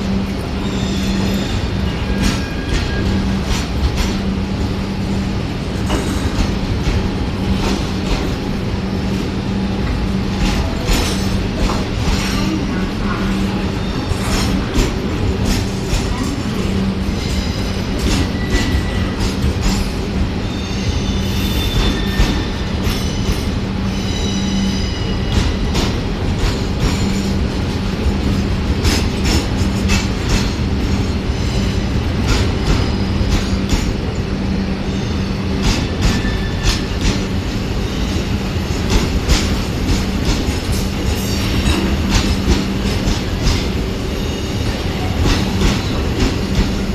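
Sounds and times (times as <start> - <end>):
freight train rolling past: 0.0 - 46.9
high wheel squeals: 0.5 - 3.4, 20.4 - 25.6.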